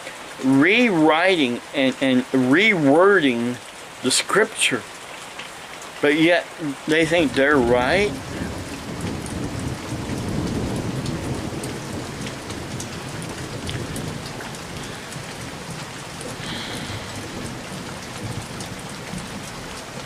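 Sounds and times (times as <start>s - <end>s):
rain pattering: 0.0s - 20.0s
thunder rumble: 7.0s - 20.0s.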